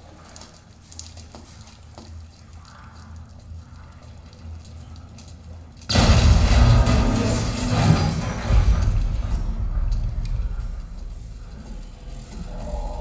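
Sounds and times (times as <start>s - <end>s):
low rumbling ambience: 1.8s - 13.0s
sudden loud burst of sound: 5.9s - 11.6s.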